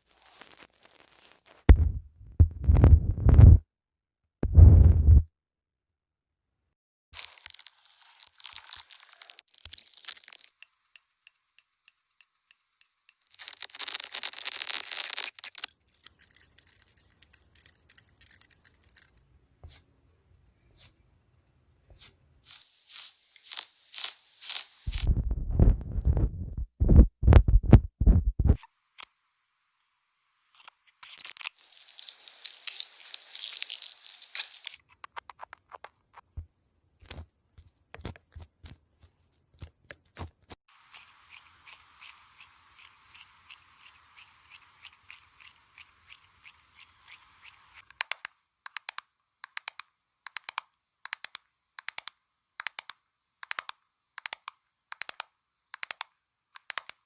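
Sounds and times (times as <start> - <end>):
low thuds: 1.7 - 3.6, 4.4 - 5.3, 24.9 - 28.6
scratchy rustling: 22.0 - 28.6.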